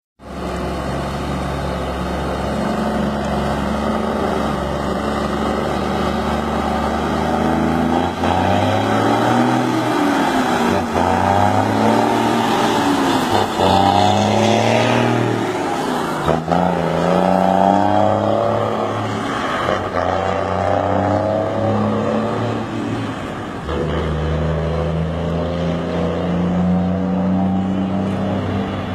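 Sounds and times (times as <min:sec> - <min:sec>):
diesel truck engine revving: 0:00.2 - 0:28.9.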